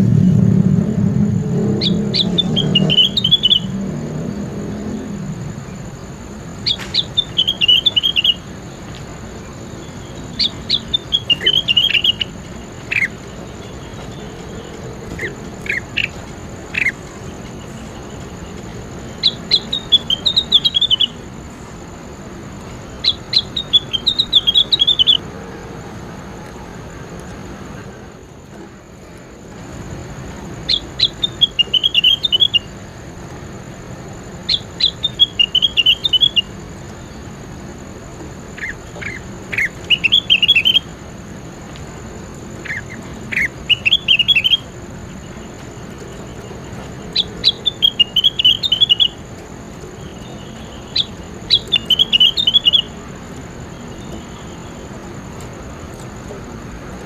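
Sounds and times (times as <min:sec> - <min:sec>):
low rumble: 0:00.0 - 0:06.4
songbird chirping: 0:00.0 - 0:25.3, 0:28.5 - 0:57.0.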